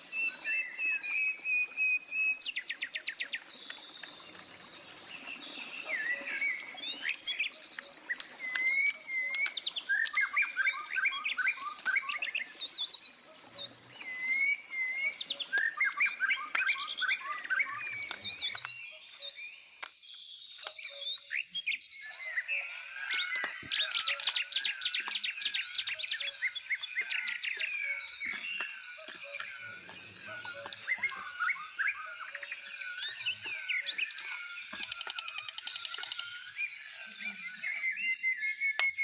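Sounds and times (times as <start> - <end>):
songbirds chirping and singing: 0.0 - 39.0.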